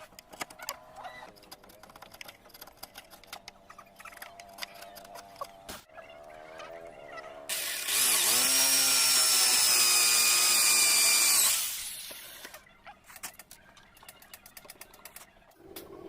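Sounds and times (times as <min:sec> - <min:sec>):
power tool motor whining: 0:07.5 - 0:12.6.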